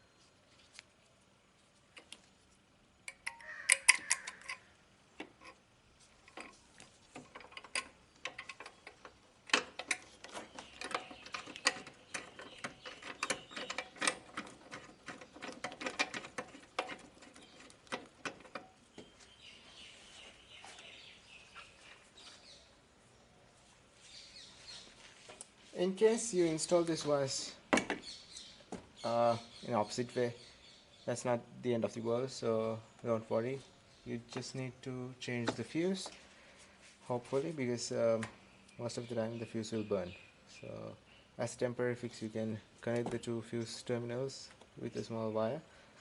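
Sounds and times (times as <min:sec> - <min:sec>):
wrench clicking on metal bolt: 0:03.1 - 0:05.6, 0:07.2 - 0:18.7.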